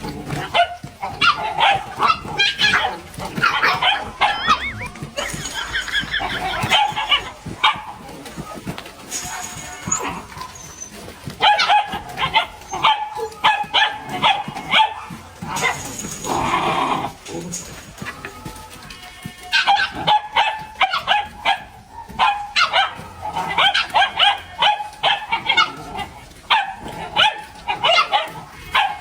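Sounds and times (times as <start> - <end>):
dog whining and yipping: 0.6 - 7.8, 9.2 - 14.8.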